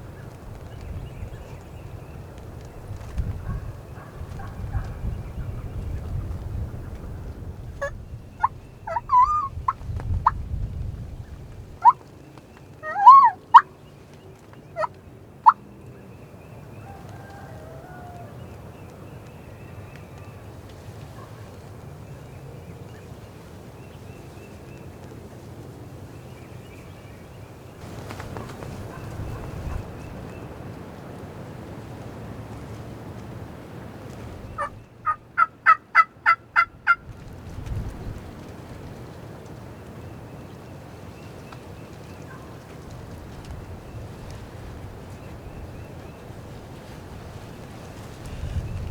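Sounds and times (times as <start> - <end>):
wind rumble on microphone: 0.0 - 12.1, 15.9 - 35.4, 36.6 - 48.9
turkey calls: 7.8 - 10.4, 11.8 - 12.0, 12.8 - 13.8, 14.8 - 15.6, 27.8 - 30.3, 34.5 - 37.0.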